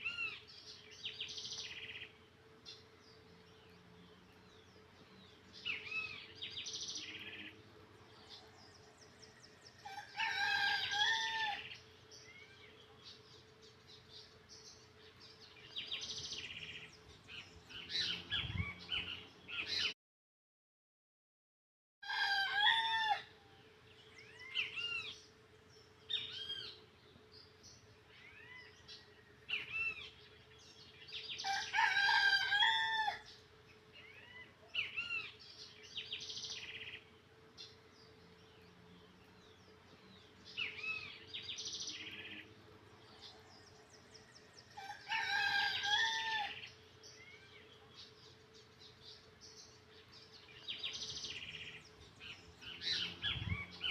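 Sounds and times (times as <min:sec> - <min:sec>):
steady low hum: 0:00.0 - 0:10.2, 0:23.2 - 0:31.8, 0:33.2 - 0:45.1, 0:46.5 - 0:53.9
birds chirping: 0:00.0 - 0:20.0, 0:22.0 - 0:53.9.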